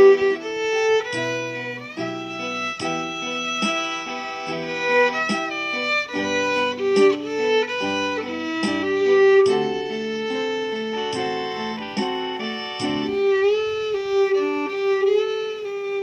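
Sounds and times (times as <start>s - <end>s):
plucked accompaniment and bass: 0.0s - 15.5s
violin playing slow melody: 0.0s - 16.0s.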